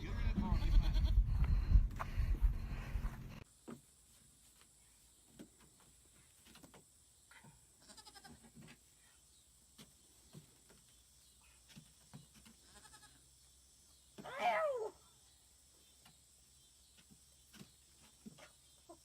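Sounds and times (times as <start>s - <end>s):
faint goat bleats: 0.2s - 1.2s, 7.3s - 9.2s, 12.6s - 13.2s.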